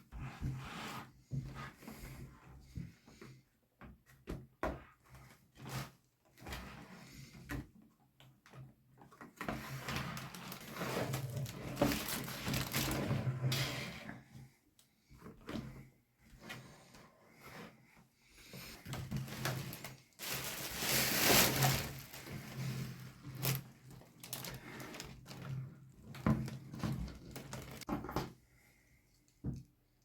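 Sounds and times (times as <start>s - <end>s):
plastic and cardboard rustling: 9.0s - 13.5s, 18.5s - 27.9s.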